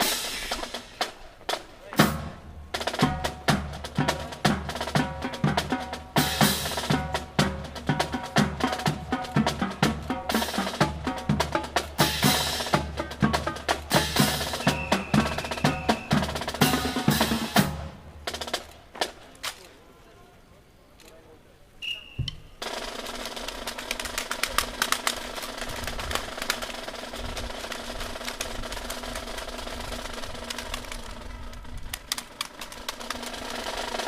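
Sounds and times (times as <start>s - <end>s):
rifles clacking and slapping: 18.4s - 19.8s, 22.6s - 34.0s.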